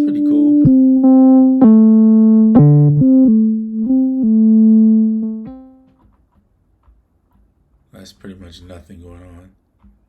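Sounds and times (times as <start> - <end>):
synthesizer playing sustained notes: 0.0 - 5.8.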